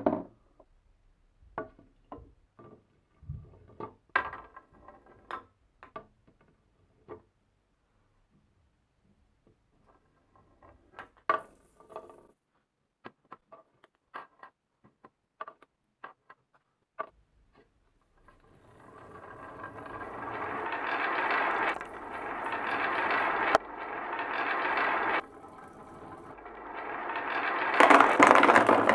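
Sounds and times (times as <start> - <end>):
balls rolling rattle: 18.3 - 28.9
wooden balls clicking on track: 18.5 - 28.9.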